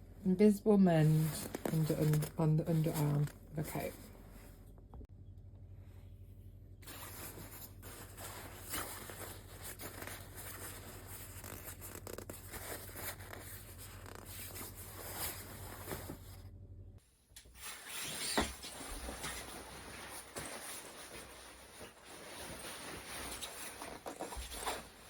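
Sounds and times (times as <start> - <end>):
jacket fabric rustling: 0.9 - 4.7, 6.8 - 16.4, 17.4 - 25.0.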